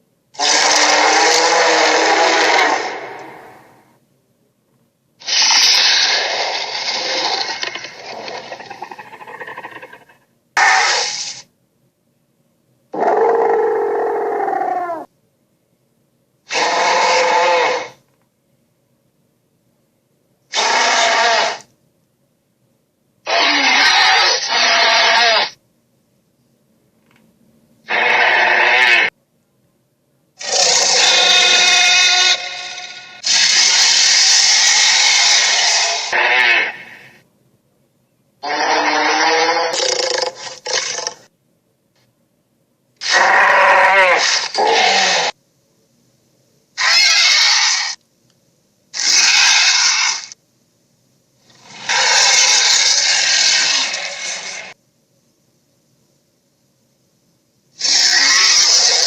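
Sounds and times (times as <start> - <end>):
gritty monster roars: 0.4 - 3.6, 30.4 - 37.0
harsh creature roars: 0.4 - 3.8, 5.2 - 11.4, 20.5 - 21.6, 30.4 - 37.2, 43.0 - 45.4, 51.6 - 54.8, 57.8 - 59.0.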